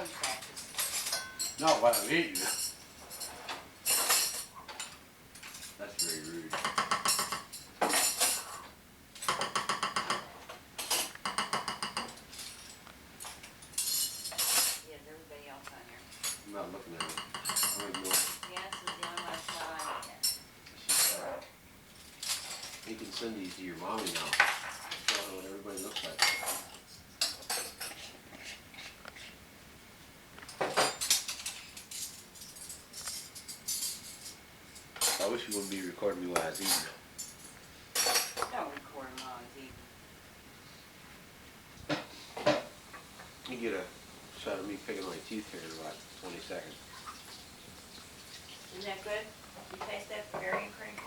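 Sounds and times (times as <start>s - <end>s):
cutlery clinking on plates: 0.0s - 14.9s, 16.0s - 29.4s, 30.4s - 38.6s, 41.9s - 43.7s.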